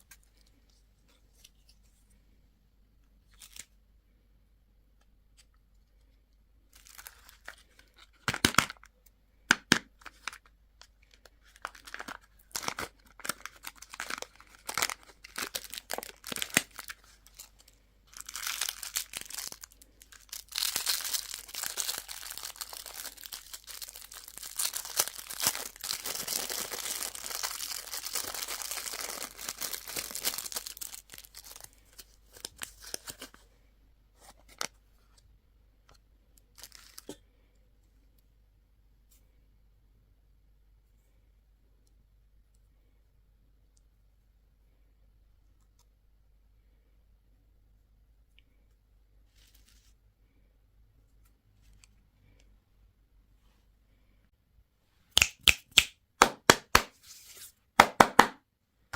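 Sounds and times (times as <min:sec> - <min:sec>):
candy wrapper crinkling and tearing: 0:06.7 - 0:08.9, 0:09.6 - 0:33.4, 0:36.4 - 0:37.2
packaging crackles and clicks: 0:10.0 - 0:33.3.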